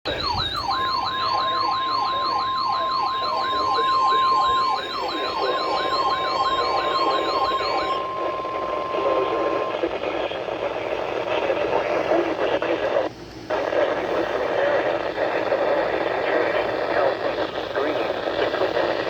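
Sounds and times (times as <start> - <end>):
electronic siren wailing: 0.1 - 10.4
steady high alert tone: 0.1 - 10.7
radio static: 0.1 - 19.0.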